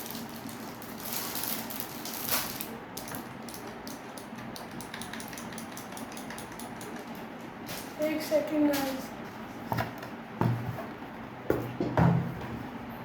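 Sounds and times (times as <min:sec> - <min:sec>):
packaging rustling: 0:00.0 - 0:03.2.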